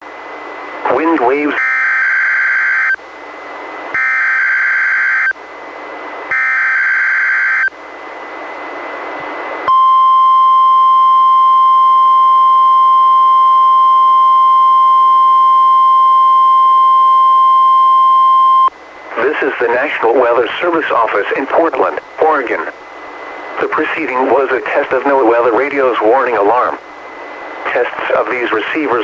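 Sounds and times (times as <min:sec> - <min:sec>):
faint radio hiss: 0:00.1 - 0:01.6, 0:18.7 - 0:29.0
loud steady alarm tone: 0:00.8 - 0:03.0, 0:03.9 - 0:05.4, 0:06.3 - 0:07.8, 0:21.1 - 0:26.8.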